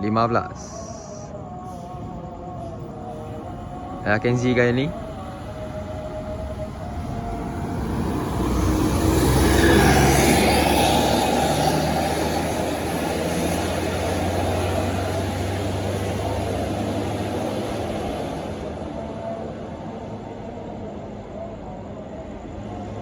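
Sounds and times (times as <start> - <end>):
bus driving past: 0.0 - 23.0
low engine hum: 0.0 - 23.0.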